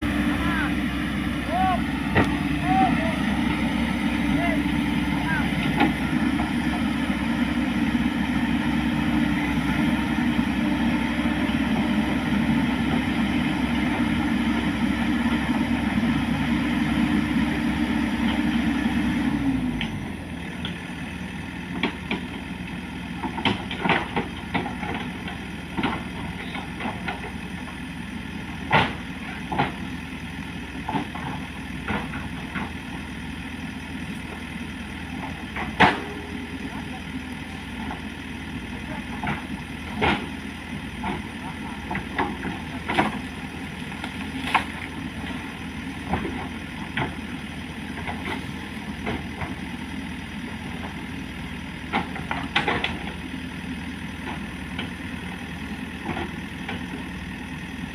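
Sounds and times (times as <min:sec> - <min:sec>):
heavy engine running: 0:00.0 - 0:57.9
sharp knocks and clanks: 0:23.2 - 0:27.3, 0:35.6 - 0:36.2.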